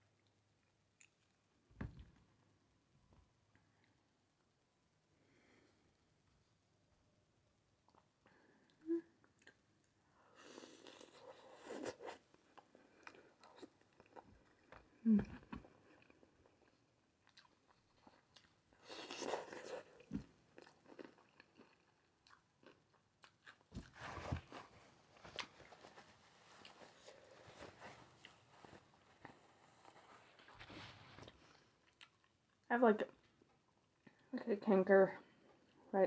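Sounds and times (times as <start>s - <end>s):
crunching and chewing food: 0.0s - 1.6s, 7.8s - 34.3s.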